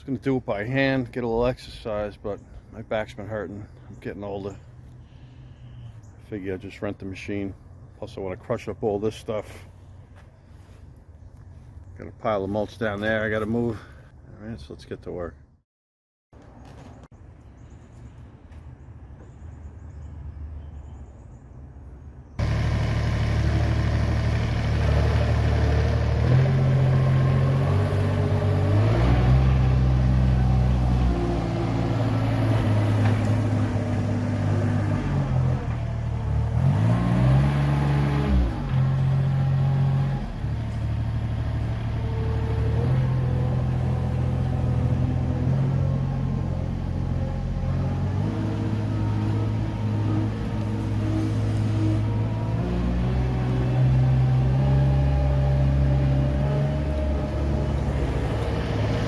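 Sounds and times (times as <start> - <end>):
skid steer engine under load: 22.4 - 59.0.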